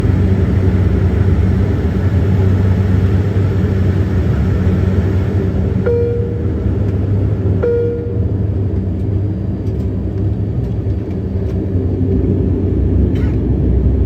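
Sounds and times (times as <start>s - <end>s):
airliner taking off rumble: 0.0s - 14.0s
short ringing tone: 5.8s - 6.8s, 7.6s - 8.4s.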